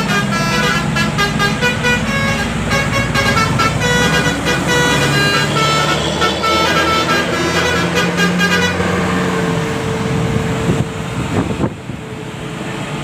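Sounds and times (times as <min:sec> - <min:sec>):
multi-tone bus air horn: 0:00.0 - 0:09.4
vehicle and road noise: 0:00.0 - 0:13.0.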